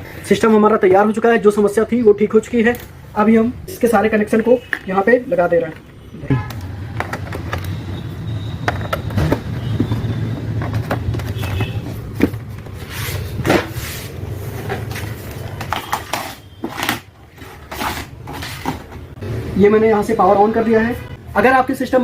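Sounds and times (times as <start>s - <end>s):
plastic plugs clicking and knocking: 5.6s - 7.8s, 8.6s - 12.8s.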